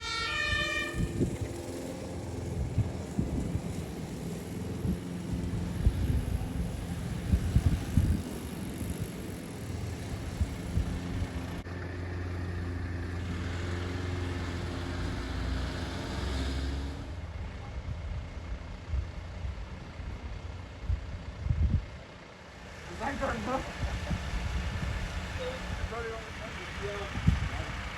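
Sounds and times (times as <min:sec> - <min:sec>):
fire engine motor droning: 0:00.0 - 0:27.9.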